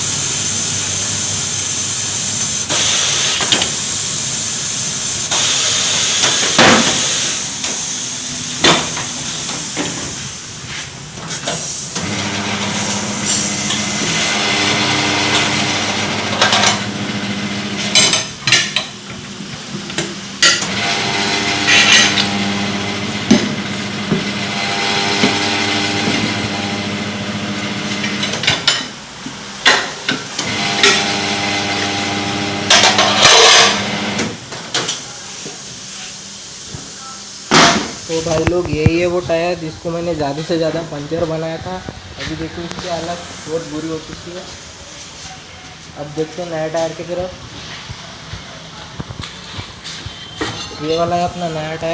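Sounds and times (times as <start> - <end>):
compressed air hisses: 0.0 - 12.0, 12.8 - 14.3
tyre machine motor humming: 12.0 - 18.0, 20.6 - 28.5, 30.4 - 34.4.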